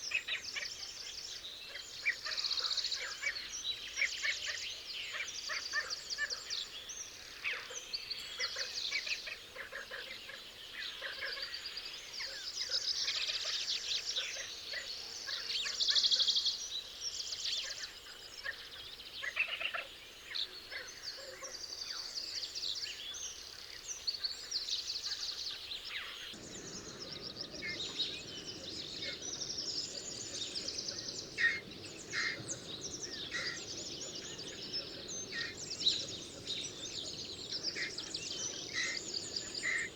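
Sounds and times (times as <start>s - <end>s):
flock of birds calling: 26.4s - 39.9s
low rushing noise: 26.4s - 39.9s.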